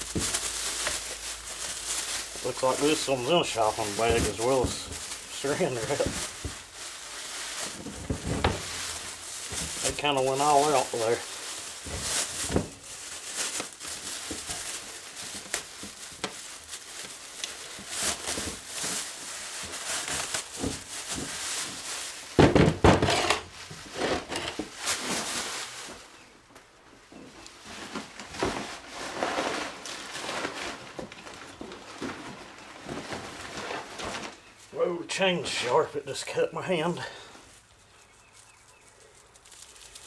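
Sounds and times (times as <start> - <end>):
plastic wrap crinkling: 0.0 - 26.6, 27.2 - 40.0.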